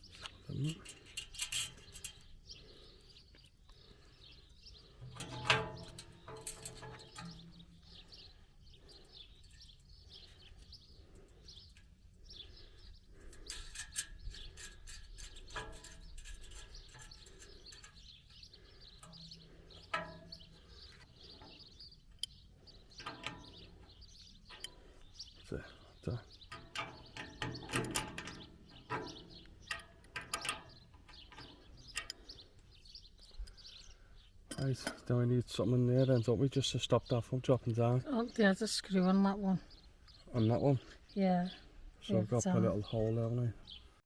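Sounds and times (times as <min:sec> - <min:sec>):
birds chirping: 0:00.0 - 0:44.0
metal clatter: 0:04.9 - 0:10.4, 0:12.6 - 0:32.3
metal gate latch clicking: 0:05.1 - 0:07.8, 0:19.0 - 0:20.7, 0:23.0 - 0:23.8, 0:26.5 - 0:32.3, 0:34.5 - 0:35.1.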